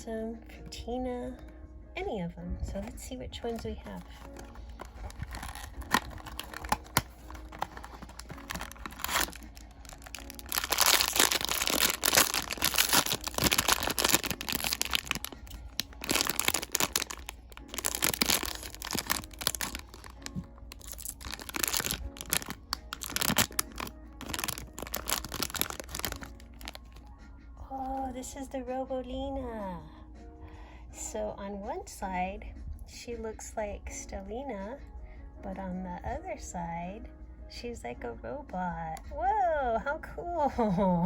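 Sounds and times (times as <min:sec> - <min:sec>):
packaging clicks: 0:03.9 - 0:27.0
packaging tearing and crinkling: 0:04.0 - 0:27.0.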